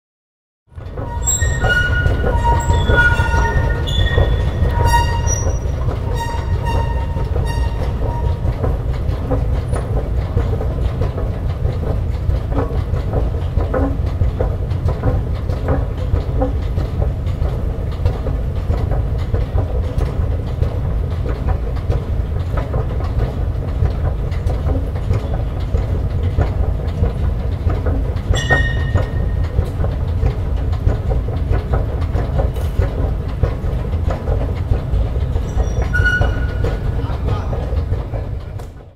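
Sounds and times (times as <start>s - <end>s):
escalator rumbling: 0.7s - 38.9s
high mechanism squeaks: 0.8s - 10.0s, 28.2s - 30.4s, 35.2s - 37.7s.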